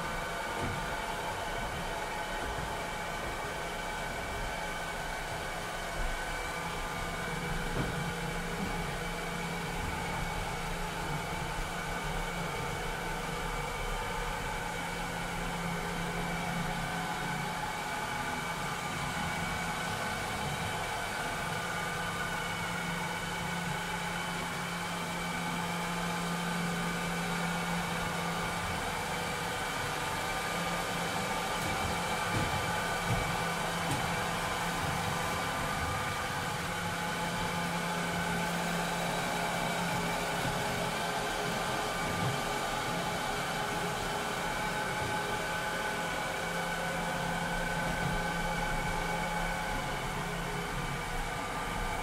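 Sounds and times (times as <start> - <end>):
robotic vacuum cleaner whirring: 26.2 - 52.0.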